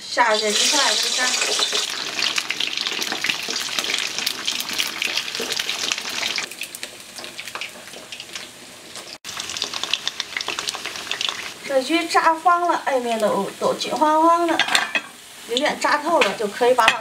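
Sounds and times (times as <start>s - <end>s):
fish deep-frying in oil: 0.0s - 17.0s.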